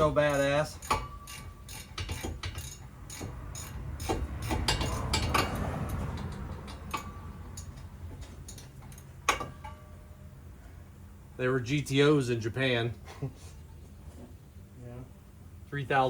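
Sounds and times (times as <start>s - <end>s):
hand tools clicking on metal: 0.0s - 9.8s.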